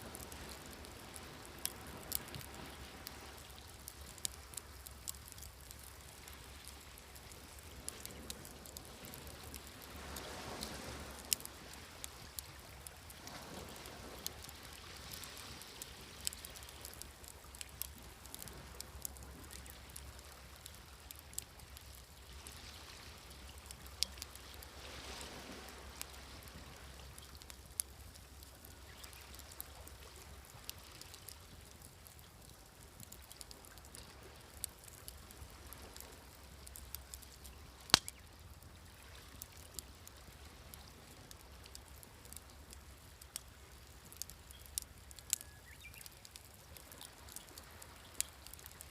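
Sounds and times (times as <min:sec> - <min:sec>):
wood fire crackling and popping: 0:00.1 - 0:38.8, 0:39.4 - 0:48.9
sea waves washing in: 0:07.8 - 0:12.5.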